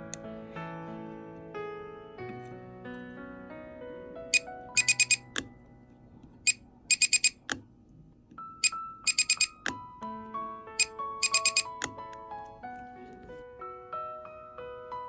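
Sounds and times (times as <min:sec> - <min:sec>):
sustained piano notes: 0:00.0 - 0:15.0
bright chime-like ticks: 0:11.2 - 0:11.7.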